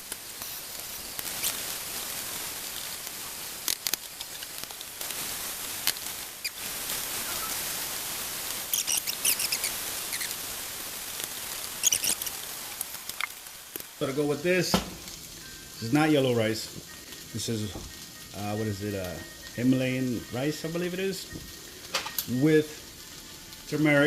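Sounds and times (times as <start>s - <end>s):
crackling fat pops: 0.0s - 1.8s, 2.7s - 7.0s, 8.6s - 14.0s
meat sizzling in a pan: 0.0s - 24.0s.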